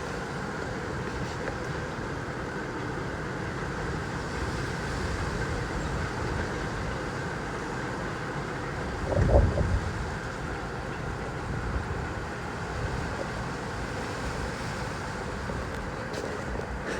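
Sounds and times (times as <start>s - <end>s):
storm wind on microphone: 8.2s - 15.8s.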